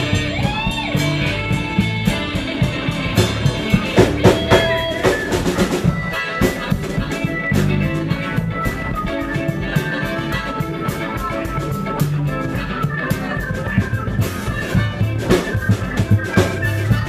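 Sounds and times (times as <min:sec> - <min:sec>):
bass guitar: 0:00.0 - 0:17.0
drum kit: 0:00.0 - 0:17.0
guitar with bent notes: 0:00.0 - 0:17.0.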